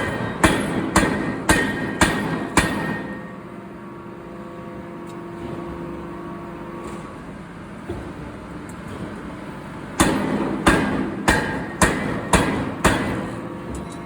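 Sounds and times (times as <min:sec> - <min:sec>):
forging hammer striking: 0:00.0 - 0:03.3, 0:10.0 - 0:13.9
machinery hum with faint tone: 0:00.0 - 0:14.0.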